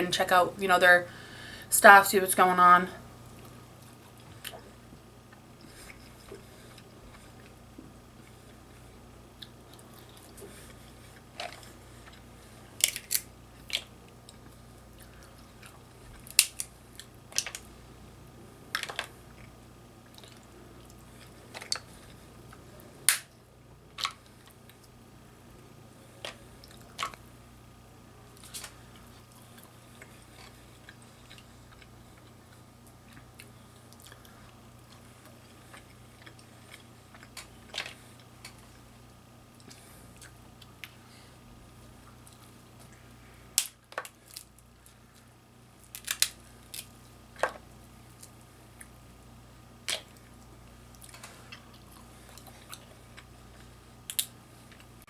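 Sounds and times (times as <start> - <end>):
person chewing: 5.3 - 17.6, 28.4 - 38.8, 50.9 - 53.8
shells cracking: 12.8 - 13.3, 16.2 - 16.7, 45.9 - 46.9.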